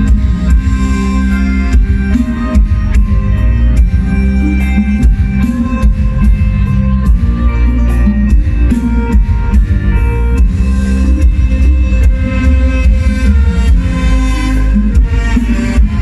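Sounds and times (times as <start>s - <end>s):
heavy bass: 0.0s - 16.0s
instrumental band music: 0.0s - 16.0s
steady drum beat: 0.0s - 16.0s.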